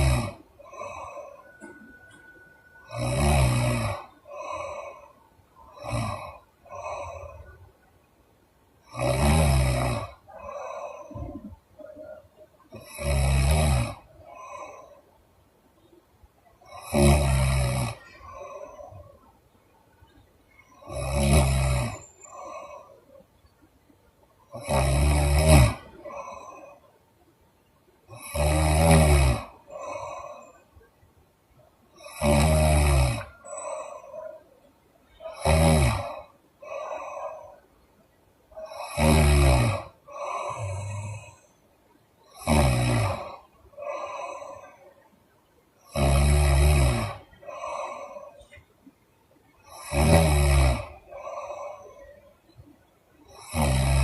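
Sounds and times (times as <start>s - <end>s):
woman snoring: 0.0s - 7.6s, 8.8s - 15.0s, 16.6s - 19.2s, 20.6s - 23.1s, 24.5s - 26.9s, 28.1s - 30.7s, 32.0s - 34.5s, 35.1s - 37.6s, 38.5s - 41.6s, 42.2s - 45.0s, 45.8s - 48.6s, 49.6s - 52.4s, 53.2s - 54.0s.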